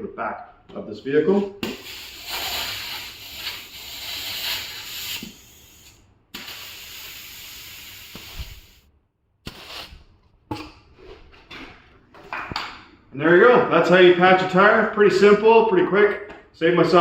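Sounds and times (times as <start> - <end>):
air hissing from tire valve: 1.6 - 8.9.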